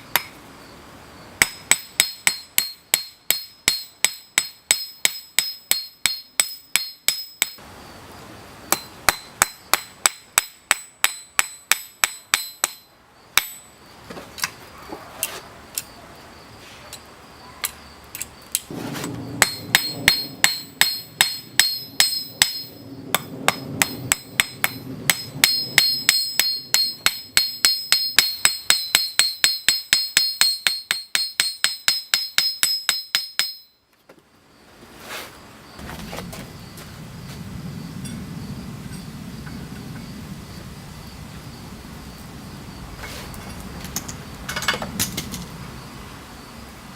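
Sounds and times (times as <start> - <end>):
hammer ringing on anvil: 1.4 - 7.6, 8.7 - 13.7, 19.4 - 33.8.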